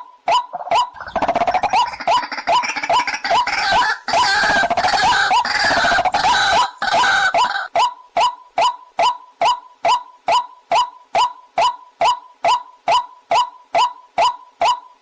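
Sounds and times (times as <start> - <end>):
waterhen call: 0.3 - 14.8
chorus of harsh bird calls: 0.5 - 7.7.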